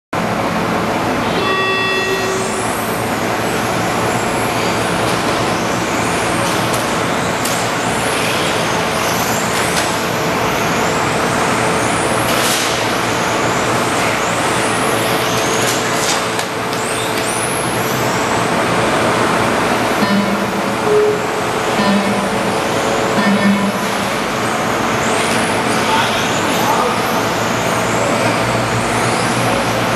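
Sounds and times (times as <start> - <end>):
short steady tone: 1.2 - 2.8, 20.0 - 24.4.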